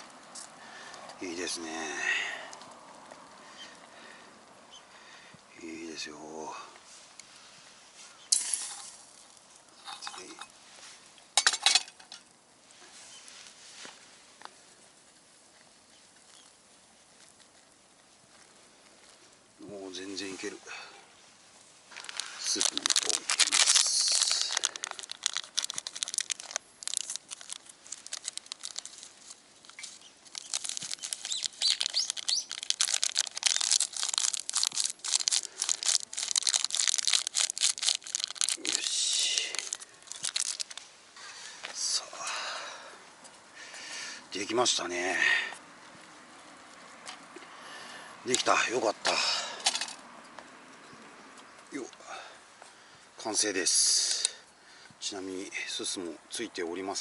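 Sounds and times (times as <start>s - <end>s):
plastic sachet crinkling: 21.9s - 41.0s.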